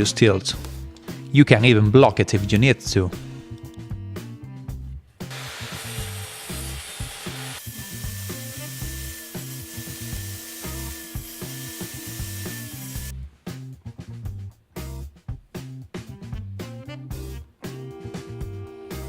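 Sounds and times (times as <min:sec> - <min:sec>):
music with steady bass beat: 0:00.5 - 0:05.1, 0:08.1 - 0:19.0
power tool cutting wood: 0:05.2 - 0:13.1.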